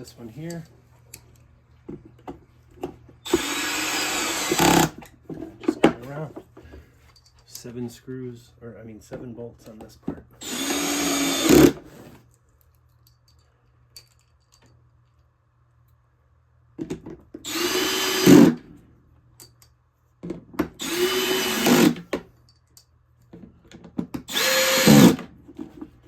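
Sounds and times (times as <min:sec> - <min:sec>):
power drill driving bolts: 0:03.2 - 0:05.0, 0:10.4 - 0:11.9, 0:17.4 - 0:18.6, 0:20.8 - 0:22.2, 0:24.2 - 0:25.3.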